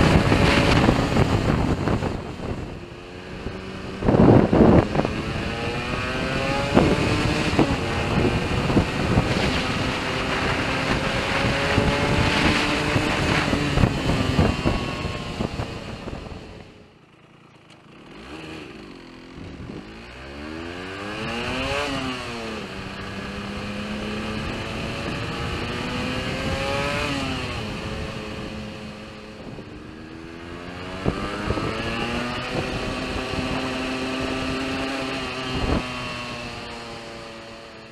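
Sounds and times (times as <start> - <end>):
two-stroke engine crackling: 3.6 - 27.6.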